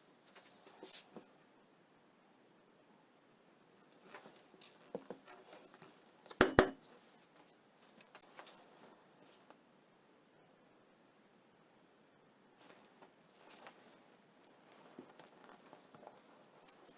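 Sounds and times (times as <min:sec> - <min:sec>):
sharp knocks: 0:06.4 - 0:06.8.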